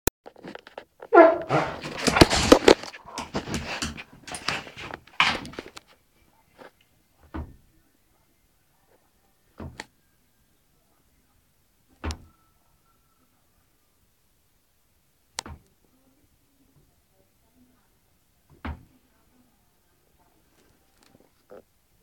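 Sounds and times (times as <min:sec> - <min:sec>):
rustling and knocking: 0:00.3 - 0:05.9
dog vocalizing: 0:01.1 - 0:03.6.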